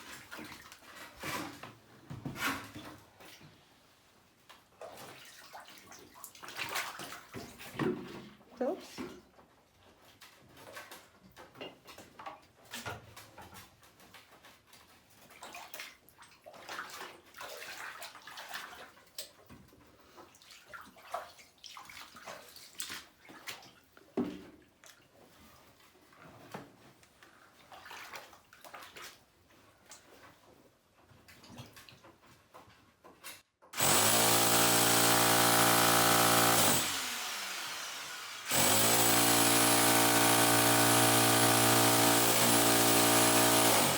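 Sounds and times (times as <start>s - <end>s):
water splashing and sloshing: 0.0s - 33.4s.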